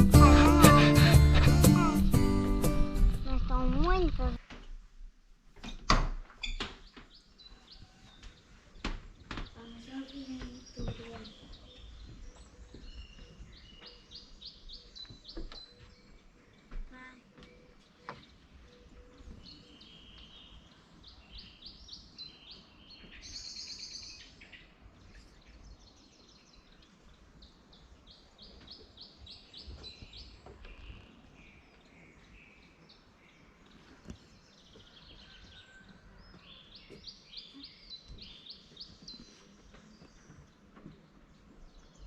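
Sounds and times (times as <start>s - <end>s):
songbirds chirping and trilling: 5.6s - 42.0s.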